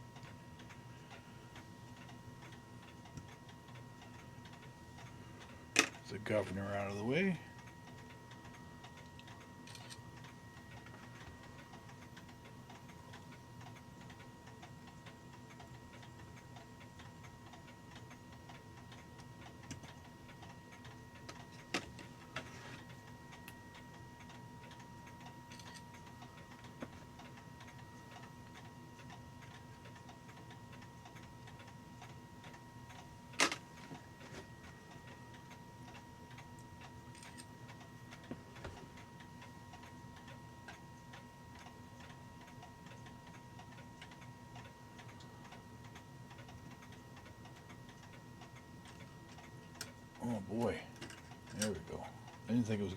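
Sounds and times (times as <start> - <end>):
faint high hum: 0.0 - 52.9
clock movement clicks: 17.0 - 52.9.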